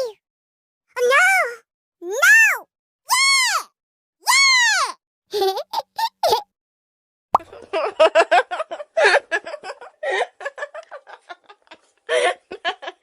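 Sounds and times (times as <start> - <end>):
young women laughing: 7.4 - 13.0.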